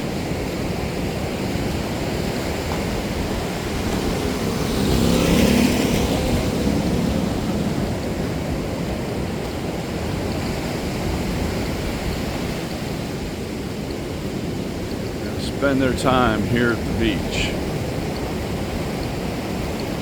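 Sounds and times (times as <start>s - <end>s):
vehicle engine passing: 3.6s - 8.6s
surf: 14.8s - 19.1s.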